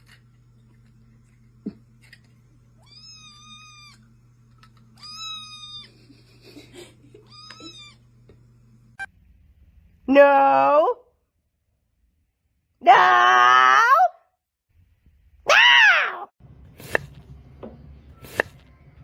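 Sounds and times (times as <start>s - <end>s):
cat meowing: 5.0s - 5.9s.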